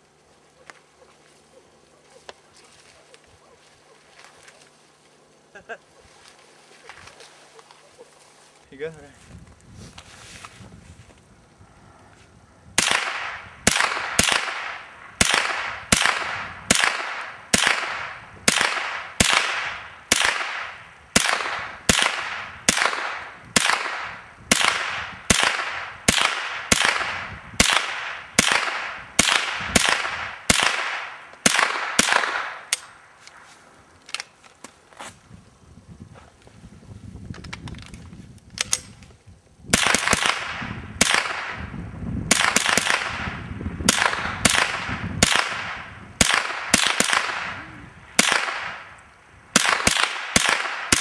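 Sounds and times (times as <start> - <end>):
gunshots with echo: 12.8 - 32.6, 42.3 - 48.8.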